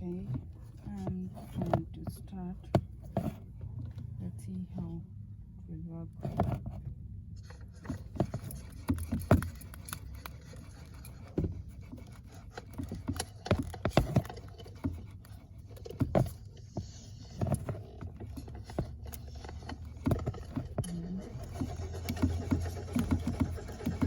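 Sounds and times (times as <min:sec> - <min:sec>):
car engine cranking: 0:07.5 - 0:24.0.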